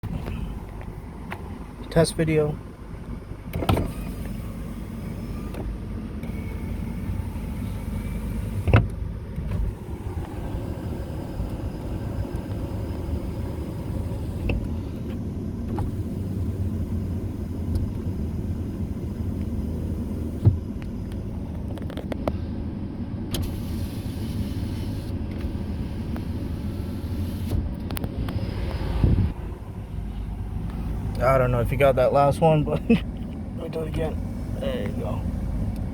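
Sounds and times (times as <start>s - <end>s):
steady low rumble: 0.0s - 24.2s, 25.5s - 35.9s
power window motors running: 2.8s - 21.9s.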